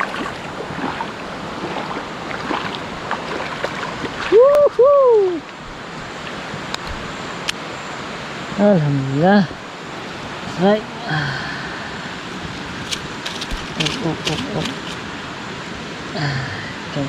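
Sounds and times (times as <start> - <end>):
stream water over rocks: 0.0 - 4.6.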